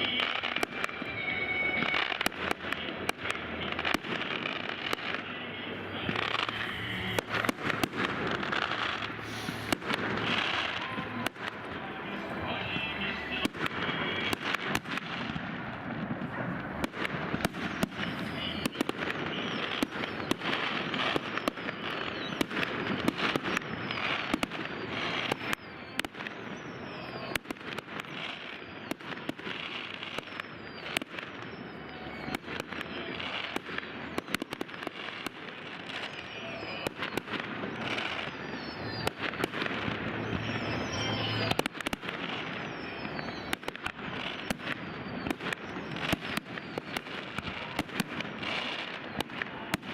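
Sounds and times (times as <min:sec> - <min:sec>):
high falling whistles: 0:00.0 - 0:03.6, 0:17.5 - 0:27.4, 0:28.1 - 0:49.9
fireworks bangs: 0:00.0 - 0:49.9
fireworks crackle and hiss: 0:00.0 - 0:49.9.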